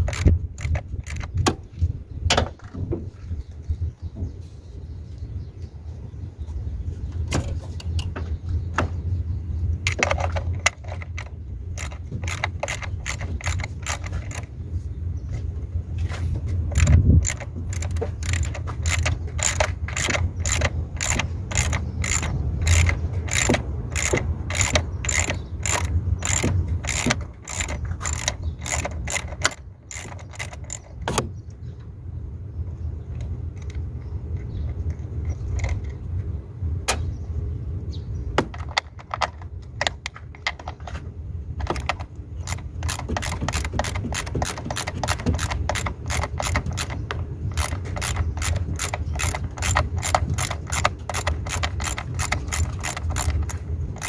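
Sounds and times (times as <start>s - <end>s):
ratchet wrench clicking: 0.0s - 1.4s, 9.9s - 14.5s, 16.7s - 31.2s, 41.6s - 54.0s.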